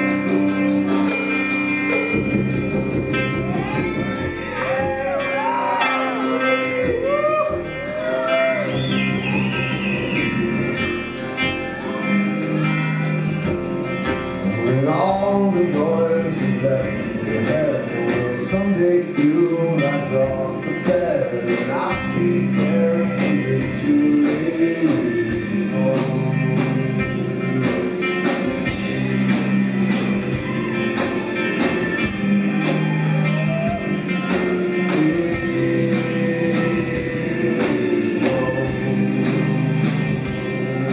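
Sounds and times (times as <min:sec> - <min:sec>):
bass line: 0:00.0 - 0:40.9
drums and cymbals: 0:00.0 - 0:40.9.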